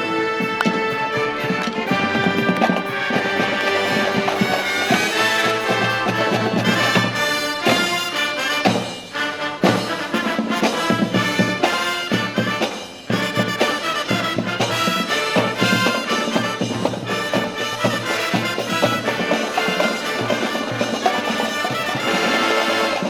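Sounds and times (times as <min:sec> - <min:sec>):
marching band playing: 0:00.0 - 0:23.0.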